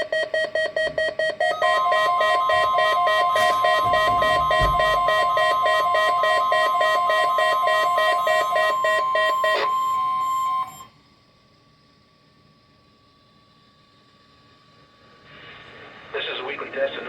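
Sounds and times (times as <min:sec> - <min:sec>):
rapidly repeating beep: 0:00.0 - 0:10.8
weather radio alarm tone: 0:00.8 - 0:10.9
faint radio hiss: 0:15.4 - 0:17.0.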